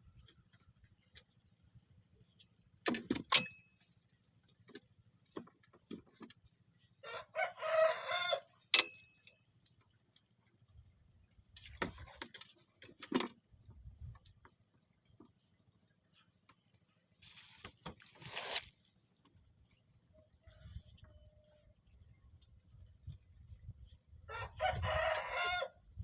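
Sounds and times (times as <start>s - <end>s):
rooster crowing: 7.0s - 8.5s, 24.3s - 25.8s.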